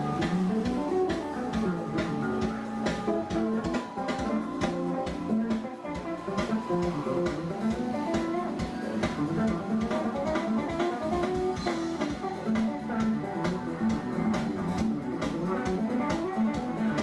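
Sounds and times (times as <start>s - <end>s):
guitar-led music with bass and drums: 0.0s - 17.0s.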